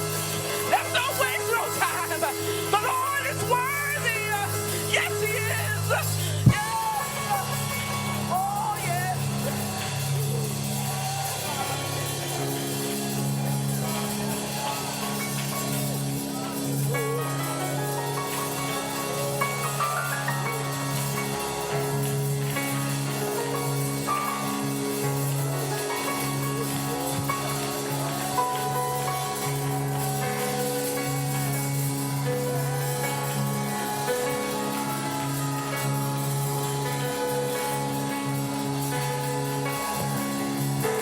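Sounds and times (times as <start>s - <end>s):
slow church worship music: 0.0s - 41.0s
sustained chords: 0.0s - 41.0s
wavering sung phrases: 0.6s - 9.6s.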